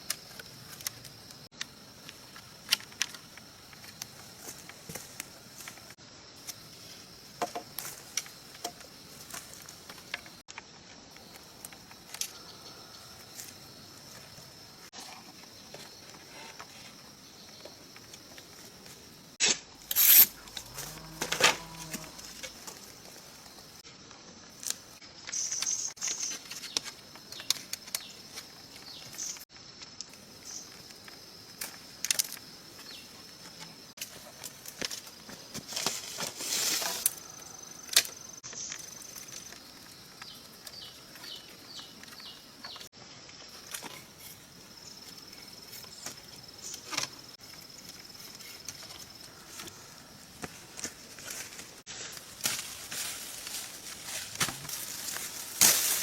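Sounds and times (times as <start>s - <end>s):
high insect drone: 0.0s - 56.0s
rustling: 34.0s - 37.3s.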